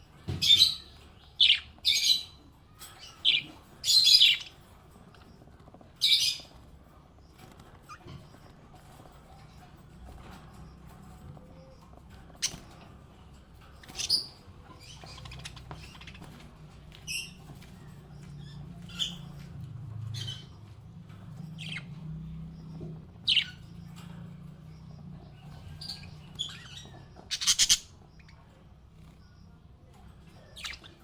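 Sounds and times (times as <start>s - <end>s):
parrots chirping: 0.2s - 5.4s, 11.9s - 24.1s, 24.9s - 28.7s, 30.3s - 31.0s.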